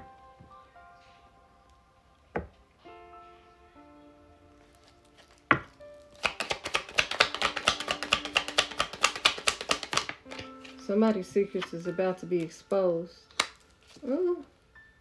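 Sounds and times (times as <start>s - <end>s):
soft background music: 0.0s - 15.0s
fast sharp clicks: 6.2s - 10.4s.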